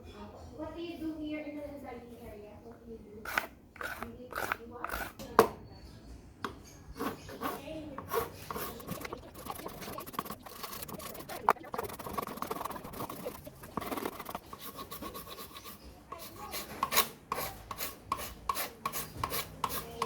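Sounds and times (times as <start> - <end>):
hand tool scraping plastic: 3.3 - 5.2, 7.0 - 20.0.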